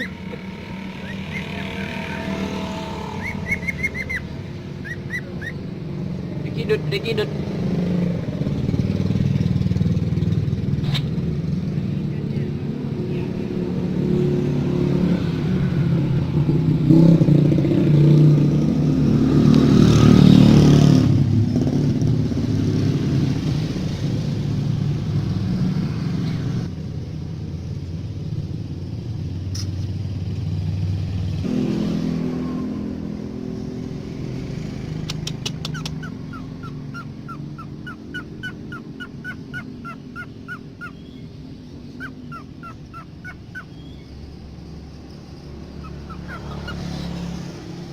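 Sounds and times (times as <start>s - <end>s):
bird chirping: 0.0s - 7.4s, 34.9s - 47.7s
vehicle engine running: 0.0s - 31.5s.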